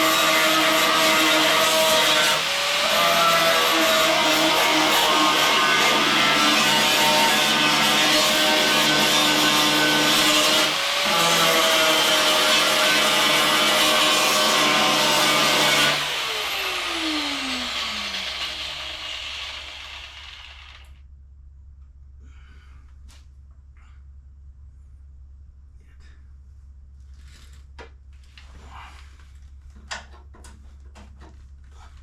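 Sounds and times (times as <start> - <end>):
angle grinder on sheet metal: 0.0 - 21.0
grinder spinning down whine: 15.6 - 21.0.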